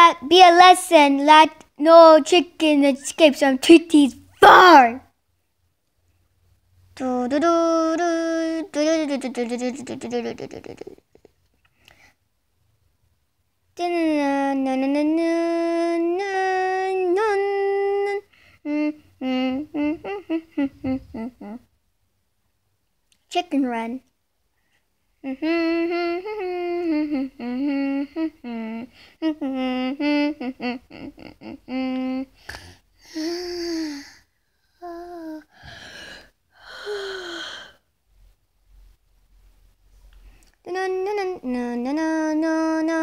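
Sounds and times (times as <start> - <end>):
person making squeaky vocal sounds: 4.3 - 5.0, 8.1 - 11.3, 16.2 - 21.7, 25.2 - 32.3
person humming: 7.0 - 11.2, 14.7 - 21.7, 25.2 - 34.0, 34.8 - 35.5, 40.7 - 43.0.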